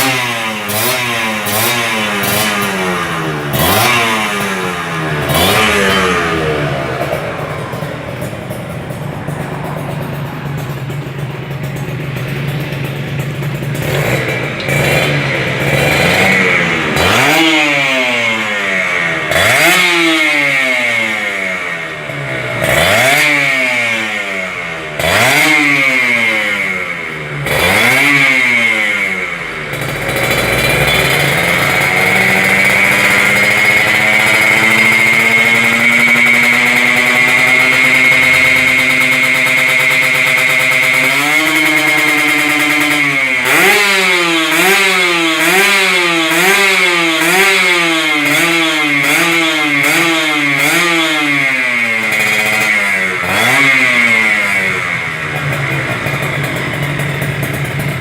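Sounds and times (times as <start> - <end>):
motorcycle engine revving: 0.0 - 58.0.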